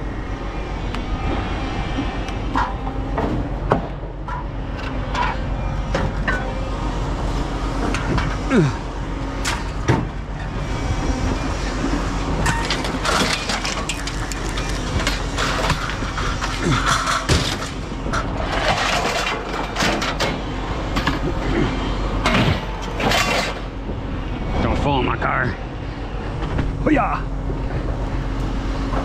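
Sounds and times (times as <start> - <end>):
metal scraping squeals: 10.3 - 17.9
scrap metal clanking: 12.4 - 21.2, 22.2 - 23.8.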